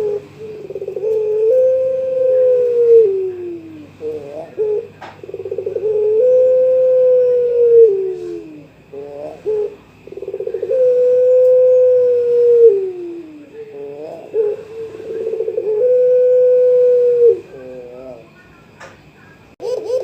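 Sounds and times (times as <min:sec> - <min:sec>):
dove cooing: 0:00.0 - 0:18.4, 0:19.6 - 0:20.0.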